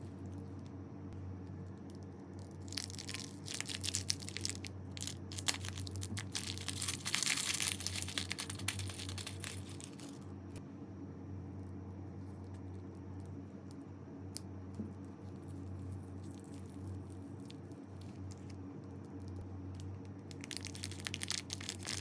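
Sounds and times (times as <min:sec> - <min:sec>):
steady low hum: 0:00.0 - 0:22.0
slime crackling: 0:02.3 - 0:10.3, 0:20.3 - 0:22.0.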